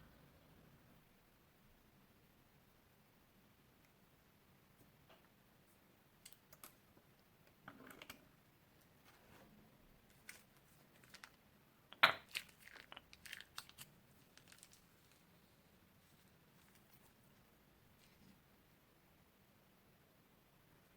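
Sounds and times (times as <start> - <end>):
crunchy slime crackling and popping: 12.0 - 15.4.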